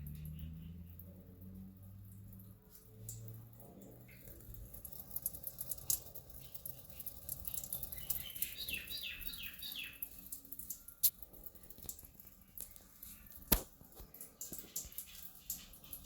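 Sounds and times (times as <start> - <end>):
faint patter and clicks: 0.0 - 8.9, 9.9 - 16.0
bird chirping: 6.4 - 10.3.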